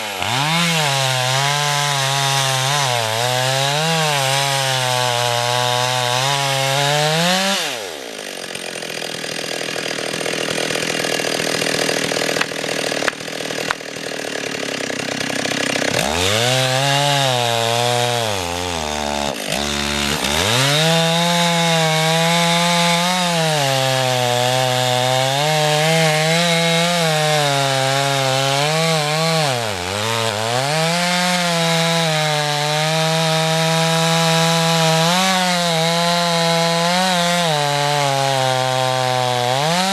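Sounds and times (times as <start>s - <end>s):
chainsaw running at high revs: 0.0s - 39.9s
sharp cracks: 12.2s - 13.9s.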